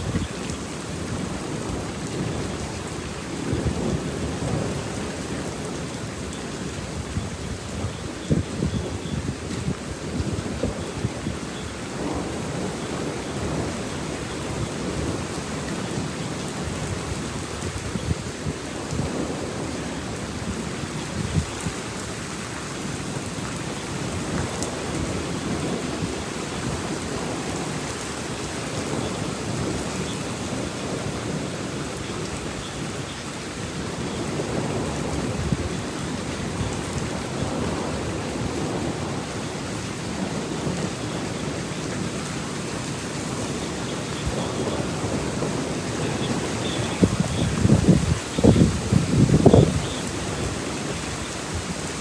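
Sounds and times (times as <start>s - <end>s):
heavy rain pouring: 0.0s - 52.0s
thunder rumbling: 23.6s - 52.0s.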